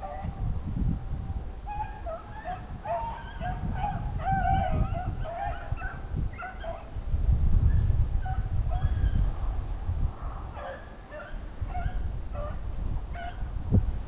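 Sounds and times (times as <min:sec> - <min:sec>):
dogs baying and yipping: 0:00.0 - 0:00.4, 0:01.7 - 0:06.9, 0:07.7 - 0:09.3, 0:10.5 - 0:13.5.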